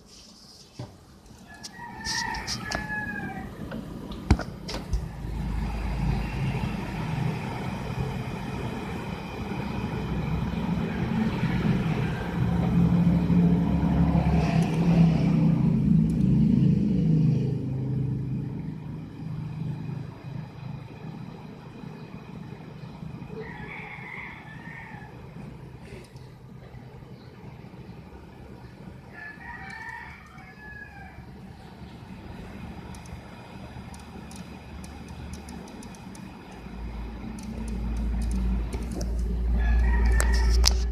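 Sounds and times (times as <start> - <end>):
low mechanical rumble: 0.0 - 40.9
rooster crowing: 1.4 - 3.8, 23.2 - 25.7, 29.0 - 31.5, 39.2 - 40.9.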